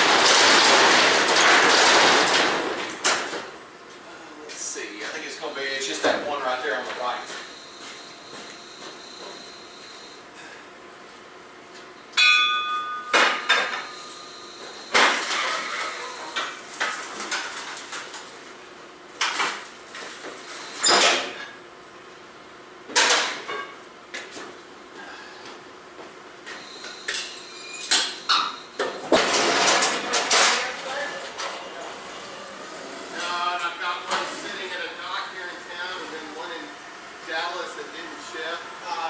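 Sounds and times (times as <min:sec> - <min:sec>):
metal clanks and bangs: 0:00.0 - 0:03.5, 0:27.9 - 0:31.6.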